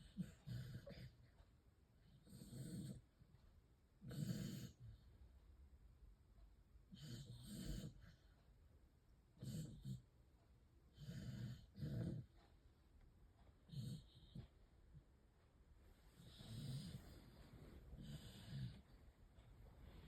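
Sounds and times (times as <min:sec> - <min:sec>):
dog snoring: 0:00.0 - 0:01.3, 0:02.0 - 0:03.2, 0:04.0 - 0:05.0, 0:06.9 - 0:08.4, 0:09.4 - 0:10.1, 0:10.9 - 0:12.5, 0:13.6 - 0:14.6, 0:16.1 - 0:19.0.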